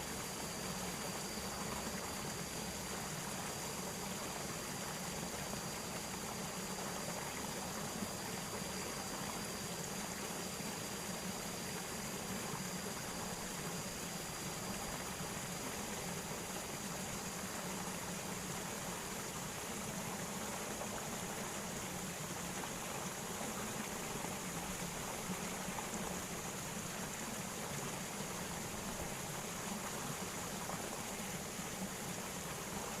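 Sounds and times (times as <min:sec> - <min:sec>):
faint high whine: 0:00.0 - 0:33.0
flowing water rushing: 0:00.0 - 0:33.0.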